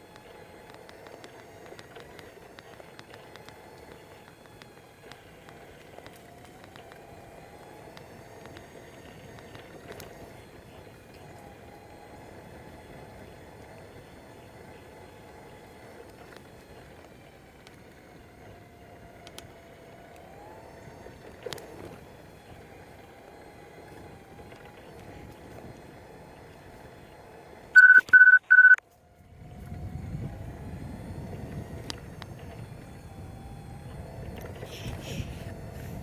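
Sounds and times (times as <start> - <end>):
distant road traffic hum: 0.0 - 36.0
high electronic beeps: 27.8 - 28.8.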